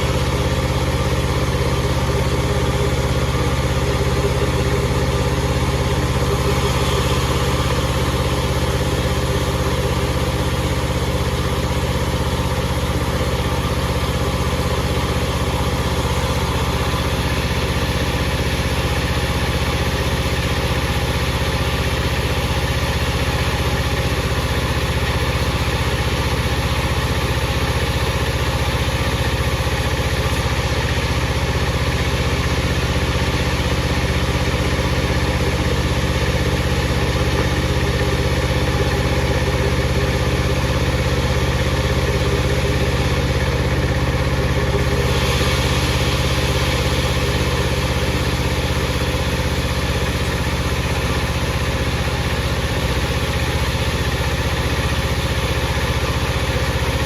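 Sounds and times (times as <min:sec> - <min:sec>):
power saw running: 0:00.0 - 0:57.0.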